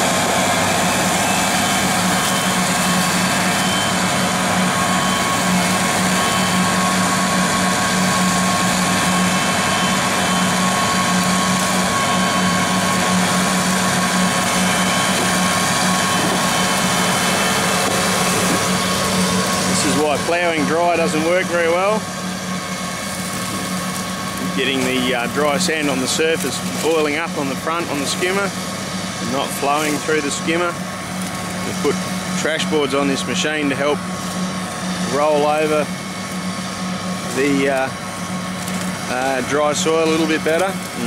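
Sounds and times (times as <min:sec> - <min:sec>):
tractor engine droning: 0:00.0 - 0:41.0.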